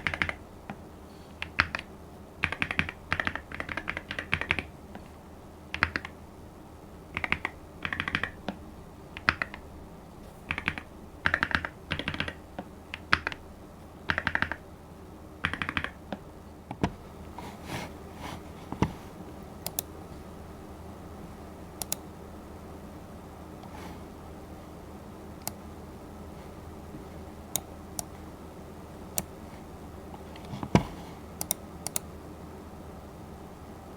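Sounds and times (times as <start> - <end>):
keyboard keystrokes: 0.0 - 0.8, 1.4 - 4.7, 5.7 - 6.2, 7.2 - 8.6, 10.5 - 13.4, 14.1 - 14.6, 15.4 - 17.0, 19.6 - 19.9, 21.8 - 22.1, 30.4 - 32.1.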